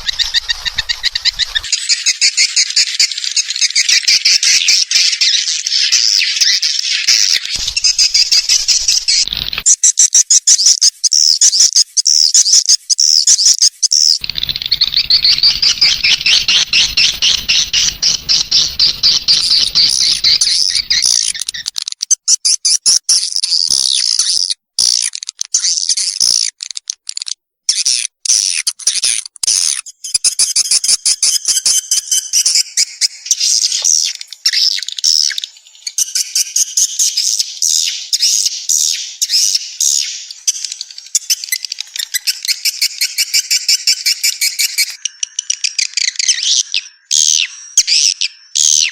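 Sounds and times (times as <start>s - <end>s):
swiftlets twittering chirps: 0.0s - 1.8s, 7.6s - 9.7s, 14.2s - 21.7s
low hum: 14.2s - 21.6s.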